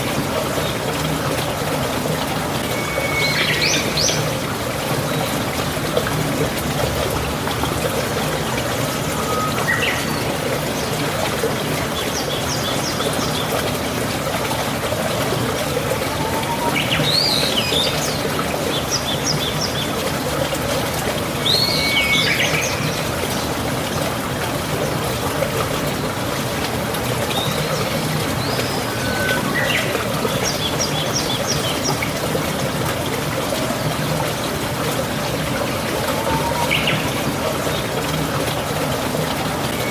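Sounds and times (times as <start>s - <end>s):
trickle of running water: 0.0s - 39.9s
songbird singing: 36.2s - 37.1s.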